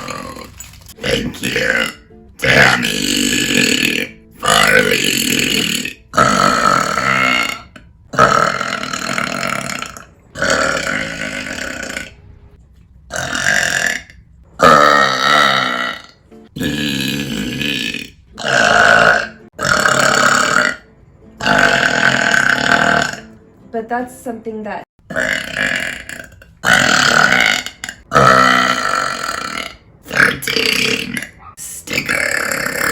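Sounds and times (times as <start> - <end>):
woman burping: 21.4 - 23.3.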